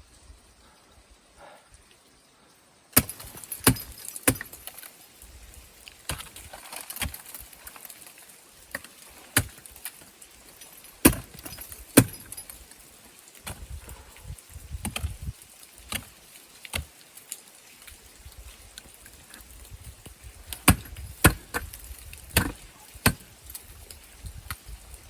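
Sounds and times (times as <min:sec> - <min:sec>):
light jingle: 0:03.0 - 0:04.8
metal gear clinking: 0:03.0 - 0:04.9.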